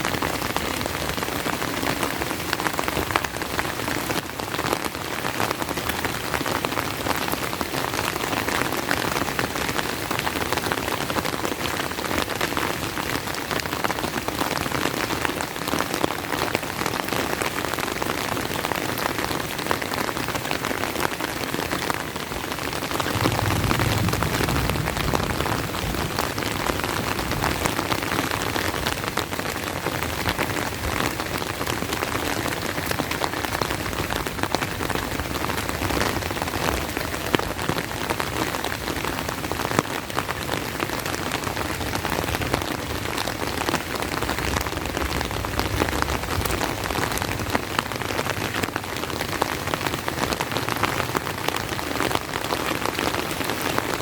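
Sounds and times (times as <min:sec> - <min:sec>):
heavy rain: 0:00.0 - 0:54.0
low rumble: 0:23.0 - 0:27.7.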